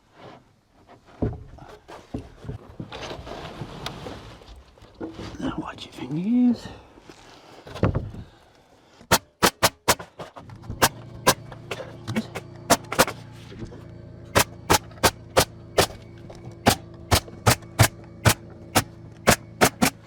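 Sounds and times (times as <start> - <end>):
nail gun firing: 9.1 - 13.2, 14.3 - 16.0, 16.6 - 20.0
air compressor hum: 10.6 - 20.0.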